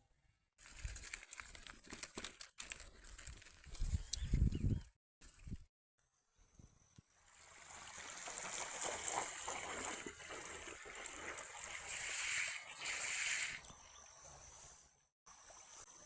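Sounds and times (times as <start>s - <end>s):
river water running and trickling: 7.3s - 13.7s.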